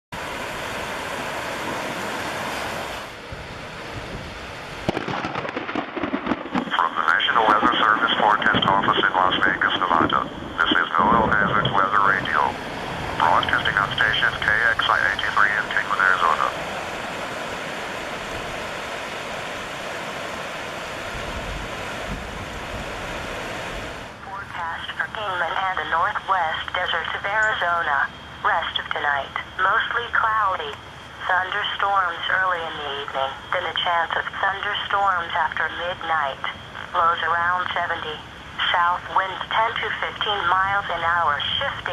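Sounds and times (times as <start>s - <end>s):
rain: 0.1s - 24.9s
wind: 0.1s - 41.9s
weather radio voice: 6.7s - 16.7s, 24.2s - 41.9s
steady rushing hiss: 6.7s - 24.2s.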